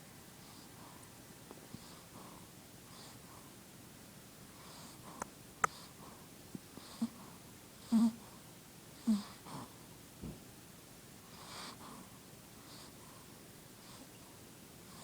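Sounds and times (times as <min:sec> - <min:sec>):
dog snoring: 0:06.8 - 0:08.3, 0:09.0 - 0:09.8, 0:11.3 - 0:12.0.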